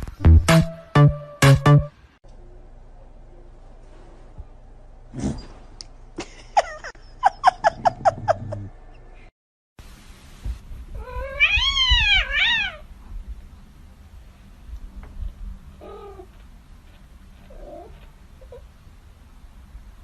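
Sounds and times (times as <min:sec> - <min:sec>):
cats meowing: 0:11.0 - 0:12.9.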